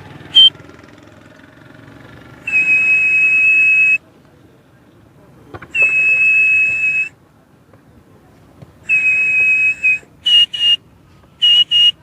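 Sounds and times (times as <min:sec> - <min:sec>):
man whistling: 0:00.3 - 0:00.6, 0:02.5 - 0:04.0, 0:05.8 - 0:07.1, 0:08.9 - 0:10.8, 0:11.4 - 0:12.0.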